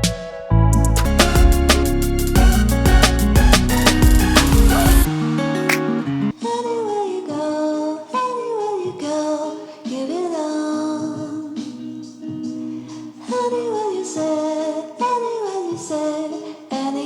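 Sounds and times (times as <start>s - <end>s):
instrumental accompaniment: 0.0s - 6.4s
woman singing: 6.4s - 17.0s.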